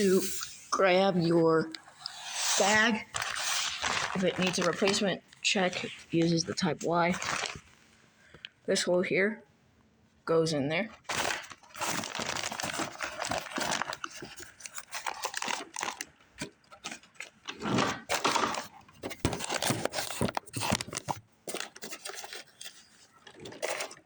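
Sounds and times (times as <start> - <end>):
scraping and crackling: 2.0 - 7.8, 11.1 - 24.0
paper bag crinkling and rustling: 2.1 - 7.8, 11.0 - 24.0.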